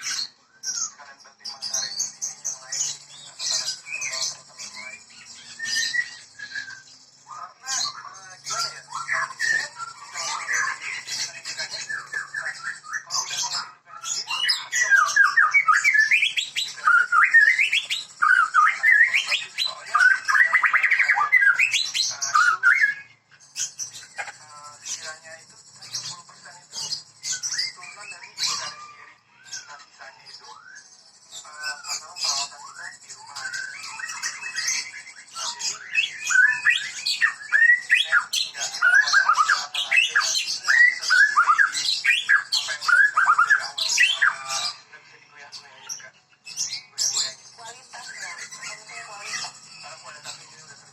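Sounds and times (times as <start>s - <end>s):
bird singing whistles and chatter: 0.0s - 50.9s
bird singing whistled phrases: 3.7s - 7.0s, 14.2s - 23.2s, 30.5s - 30.9s, 32.4s - 44.4s.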